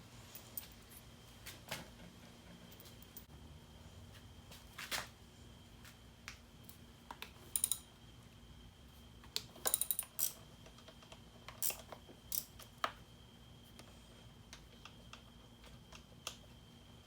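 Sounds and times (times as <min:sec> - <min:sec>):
metallic clinks of hand tools: 0:07.5 - 0:07.8.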